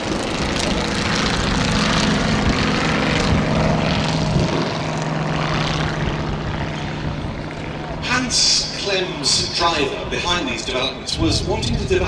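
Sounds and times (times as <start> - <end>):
propeller plane engine in flight: 0.0 - 12.0.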